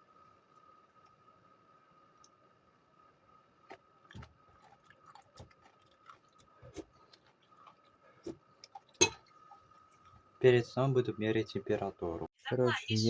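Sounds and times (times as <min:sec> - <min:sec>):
person chewing: 0:03.6 - 0:09.6.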